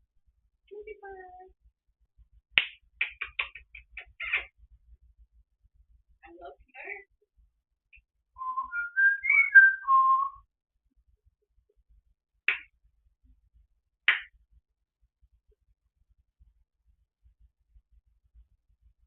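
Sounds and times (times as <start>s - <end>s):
parrot whistling a tune: 8.4s - 10.4s.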